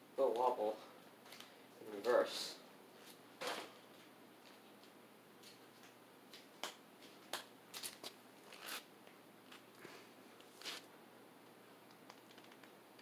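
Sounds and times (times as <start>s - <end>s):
ceiling fan humming: 0.0s - 13.0s
soft clicks and rustles: 11.4s - 13.0s.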